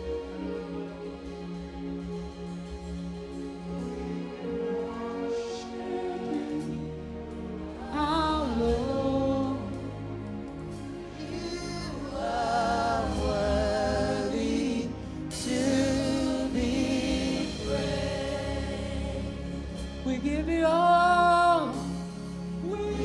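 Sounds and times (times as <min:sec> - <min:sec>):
gospel choir singing: 0:00.0 - 0:23.0
instrumental backing music: 0:00.0 - 0:23.0.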